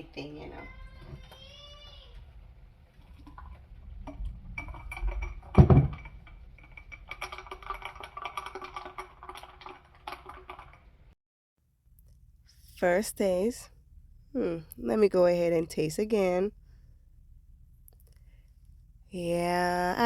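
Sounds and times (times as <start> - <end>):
loud thump: 5.6 - 6.0.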